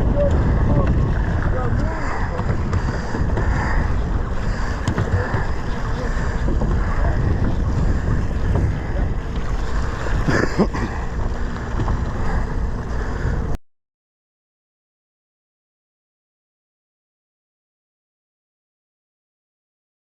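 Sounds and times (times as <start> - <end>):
boat engine rumble: 0.0 - 13.6
sea: 0.0 - 13.6
wind buffeting microphone: 0.0 - 13.6.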